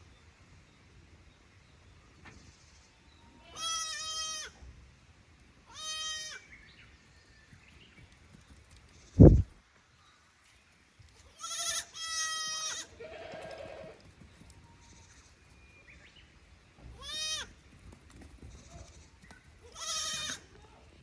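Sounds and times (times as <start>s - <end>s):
goat kids bleating: 3.4s - 4.6s, 5.7s - 6.6s, 11.3s - 14.0s, 16.8s - 17.6s, 18.4s - 20.6s.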